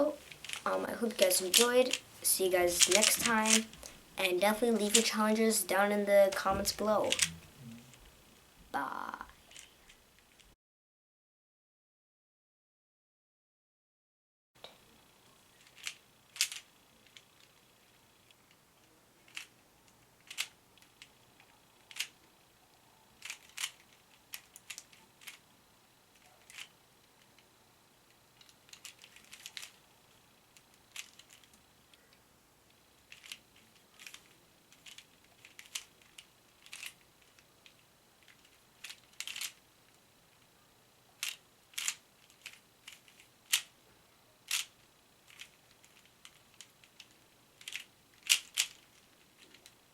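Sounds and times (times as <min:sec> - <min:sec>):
puzzle cube layers clicking: 0:00.1 - 0:04.0, 0:04.7 - 0:05.2, 0:06.3 - 0:07.5, 0:15.6 - 0:17.6, 0:20.2 - 0:22.2, 0:23.2 - 0:25.4, 0:28.4 - 0:29.8, 0:30.6 - 0:31.6, 0:33.0 - 0:39.6, 0:41.2 - 0:43.7, 0:44.5 - 0:44.7, 0:45.3 - 0:49.8.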